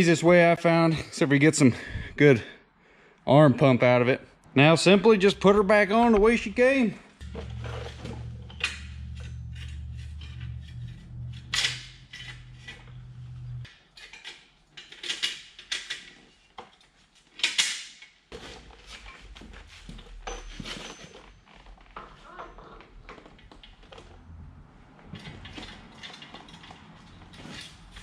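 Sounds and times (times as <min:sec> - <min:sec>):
low steady hum: 0:07.2 - 0:13.7
metal parts clanking: 0:07.2 - 0:16.2.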